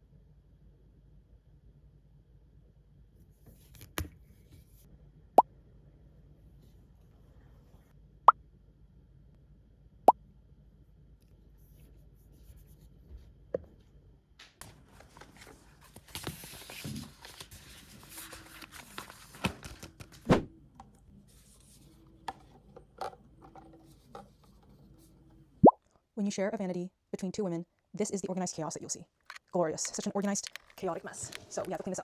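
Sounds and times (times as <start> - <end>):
objects clicking and knocking: 22.2 - 24.8, 29.2 - 32.0
rustling: 29.2 - 32.0.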